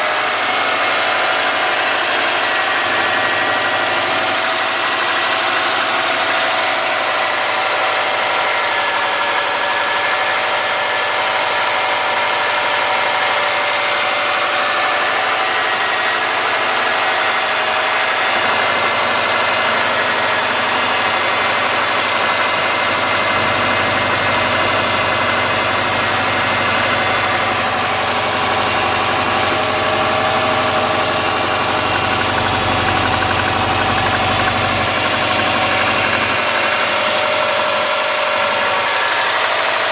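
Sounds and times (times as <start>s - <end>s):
car engine idling: 0.0s - 39.9s
engine valve ticking: 14.6s - 39.8s.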